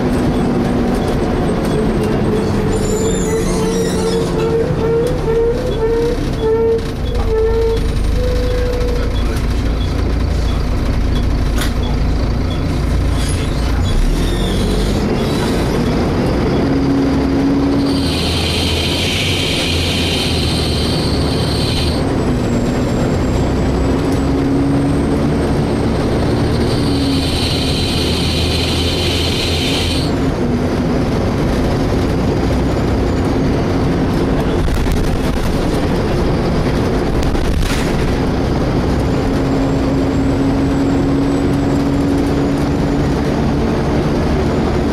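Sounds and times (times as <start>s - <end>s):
bus engine droning: 0.0s - 44.9s
high-pitched screeching: 2.1s - 9.4s, 17.7s - 22.0s, 26.6s - 30.2s.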